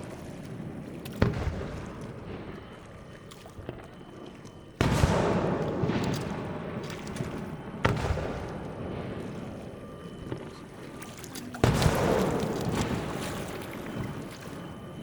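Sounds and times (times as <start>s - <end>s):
rumble with crackles: 0.0s - 15.0s
firework shells booming: 4.8s - 9.2s.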